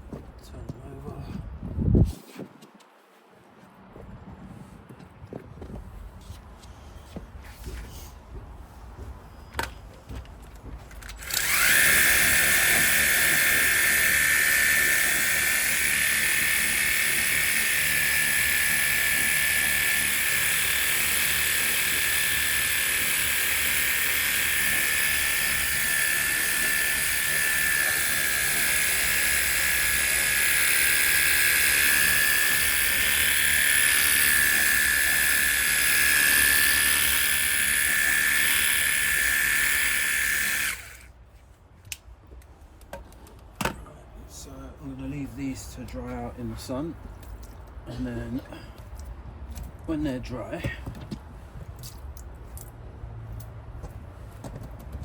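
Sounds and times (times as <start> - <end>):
pump motor whining: 11.1 - 41.1.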